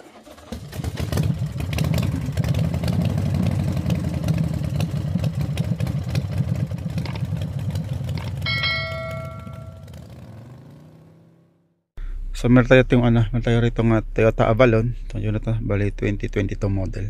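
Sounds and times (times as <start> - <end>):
engine running with ticking clatter: 0.0 - 11.5.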